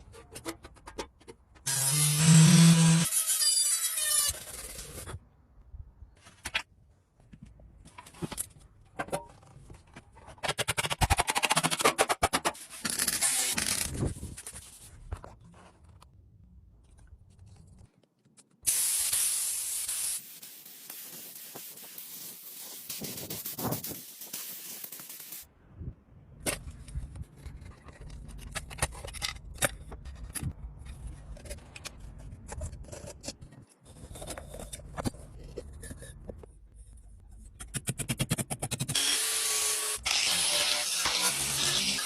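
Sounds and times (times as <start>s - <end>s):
spray hissing: 18.7s - 25.4s.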